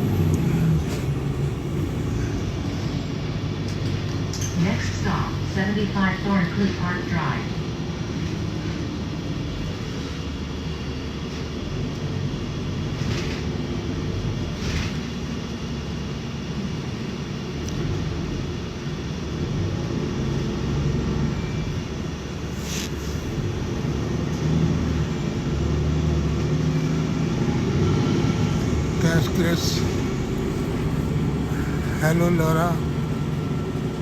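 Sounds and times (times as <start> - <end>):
bus engine and road rumble: 0.0 - 34.0
short hissing sounds: 22.5 - 23.3.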